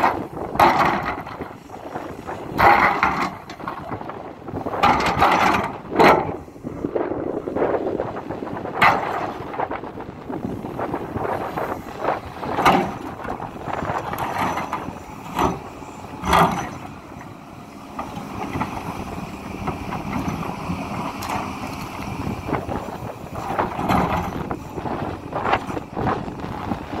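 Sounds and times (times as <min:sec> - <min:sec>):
sharp knocks and clanks: 0:00.0 - 0:01.4, 0:14.0 - 0:16.9
excavator diesel engine running: 0:00.0 - 0:27.0.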